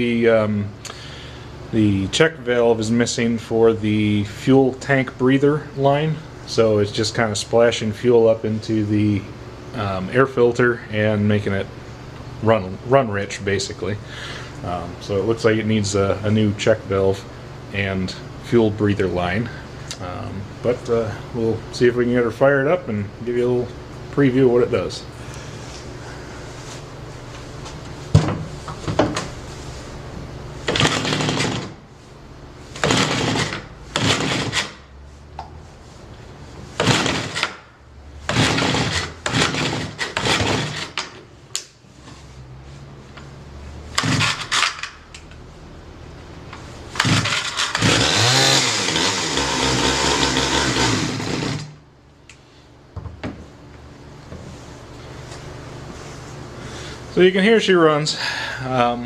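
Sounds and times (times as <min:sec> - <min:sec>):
chainsaw engine revving: 0:30.7 - 0:31.7, 0:32.8 - 0:34.8, 0:36.8 - 0:37.6, 0:38.3 - 0:40.9, 0:43.9 - 0:44.6, 0:47.0 - 0:51.8.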